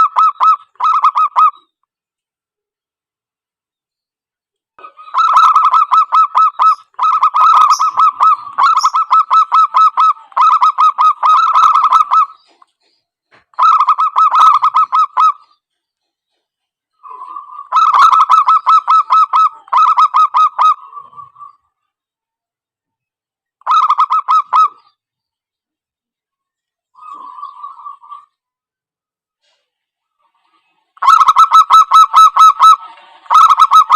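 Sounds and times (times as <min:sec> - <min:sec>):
doves cooing rapidly: 0:04.8 - 0:12.9, 0:13.6 - 0:15.6, 0:17.0 - 0:21.6, 0:23.6 - 0:24.8, 0:27.0 - 0:28.3, 0:31.0 - 0:33.9.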